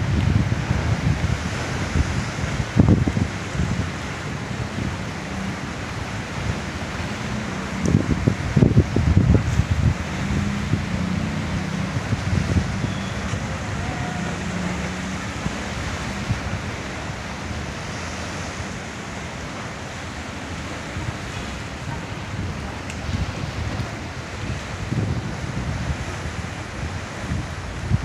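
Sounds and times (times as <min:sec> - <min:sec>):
heavy sea waves: 0:00.0 - 0:28.0
wind gusting over microphone: 0:00.0 - 0:28.0.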